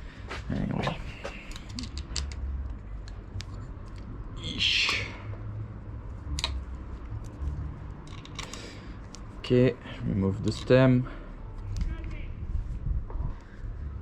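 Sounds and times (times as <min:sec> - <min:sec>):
low steady hum: 0:00.0 - 0:14.0
hand tools clicking and tapping: 0:01.2 - 0:04.1, 0:07.2 - 0:09.3.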